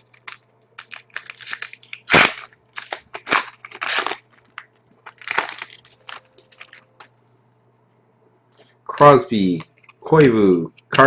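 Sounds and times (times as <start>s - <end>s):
wrapper tearing and crinkling: 0.0s - 7.1s.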